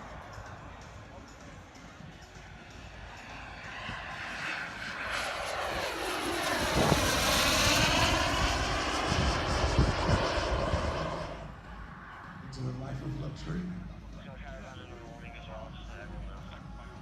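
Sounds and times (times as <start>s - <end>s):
model jet turbine whine: 2.5s - 12.4s.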